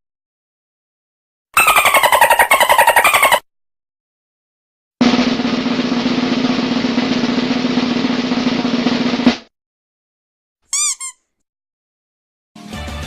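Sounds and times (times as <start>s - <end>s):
drum roll: 5.0s - 9.5s.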